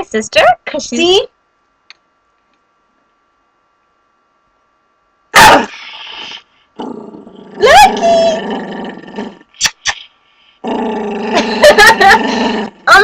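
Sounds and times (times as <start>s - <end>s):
dog growling: 6.8s - 9.5s, 10.6s - 13.0s.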